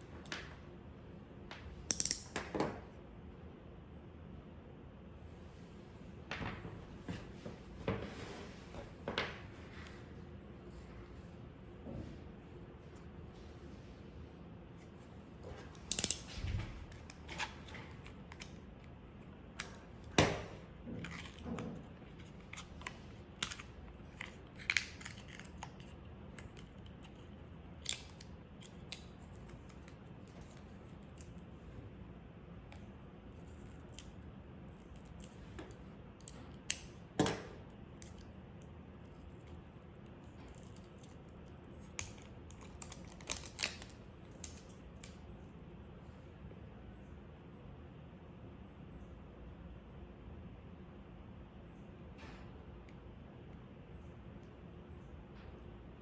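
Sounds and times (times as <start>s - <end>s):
tape roll clicking and crinkling: 15.5s - 31.4s, 40.2s - 45.3s.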